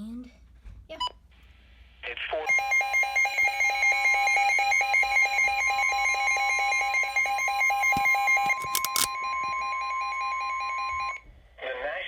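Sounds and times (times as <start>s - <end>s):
rapid pulsed alarm beeps: 2.5s - 11.2s
steady warning alarm tone: 2.5s - 11.2s
sharp clicks: 7.8s - 9.1s.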